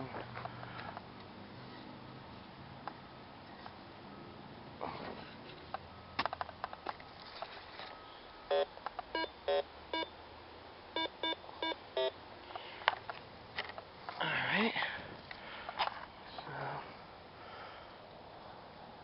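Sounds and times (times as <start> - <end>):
soil rustling: 6.5 - 8.3
metal detector beeping: 8.5 - 10.1, 11.0 - 12.2.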